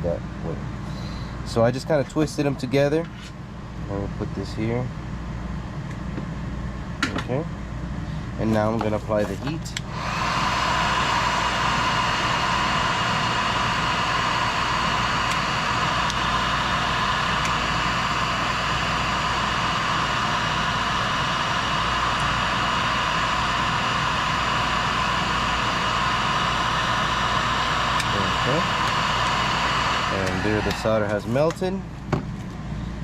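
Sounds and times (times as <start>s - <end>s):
heat gun blowing hiss: 9.8s - 31.5s.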